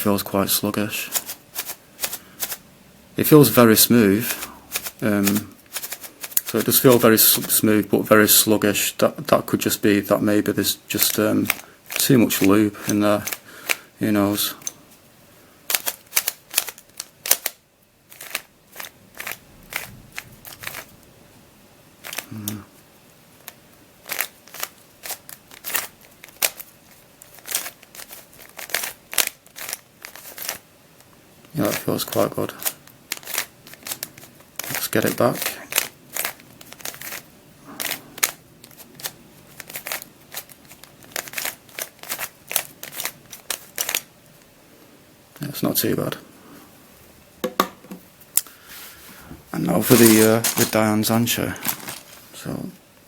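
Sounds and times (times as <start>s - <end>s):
puzzle cube clicking: 4.4s - 7.5s, 11.0s - 13.8s, 15.7s - 20.9s, 23.4s - 30.6s, 31.7s - 37.2s, 37.8s - 44.1s.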